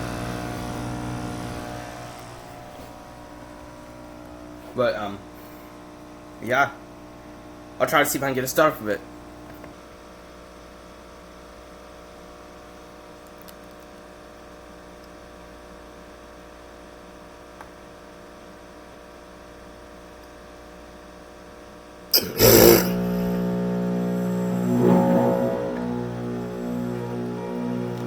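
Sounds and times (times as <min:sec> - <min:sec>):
sudden loud burst: 0:22.2 - 0:26.8.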